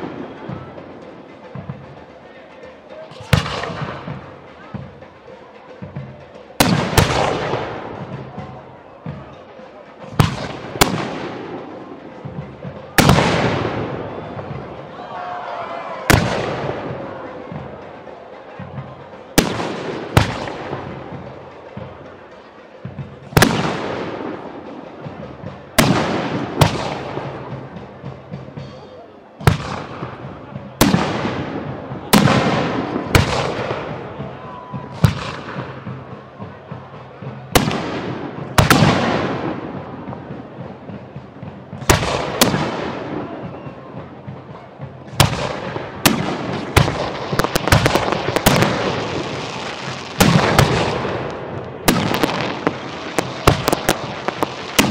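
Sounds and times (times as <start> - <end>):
fireworks bursting with bangs: 3.1 - 4.2, 6.6 - 8.1, 10.0 - 14.7, 16.1 - 17.7, 19.4 - 21.3, 23.0 - 28.6, 29.4 - 36.0, 36.6 - 54.9.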